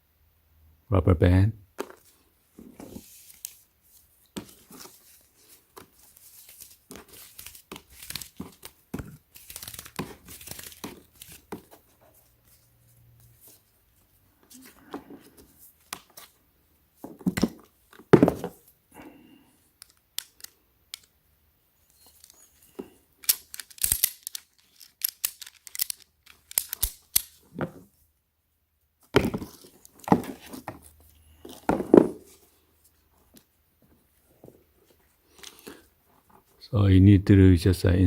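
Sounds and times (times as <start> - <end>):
packaging rustling and scraping: 1.8 - 13.7, 21.9 - 27.9, 29.2 - 36.5
ratchet strap clicks: 23.2 - 27.4.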